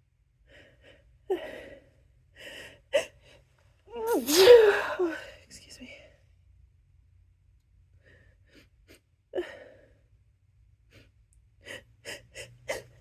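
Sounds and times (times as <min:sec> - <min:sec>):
person gasping before sneezing: 0:04.0 - 0:05.2.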